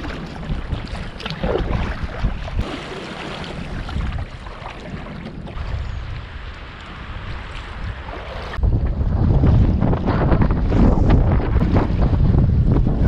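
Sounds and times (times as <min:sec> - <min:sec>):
faint splashes: 0:00.0 - 0:08.6
water around paddled canoe: 0:00.0 - 0:13.0
wind buffeting microphone: 0:00.0 - 0:13.0.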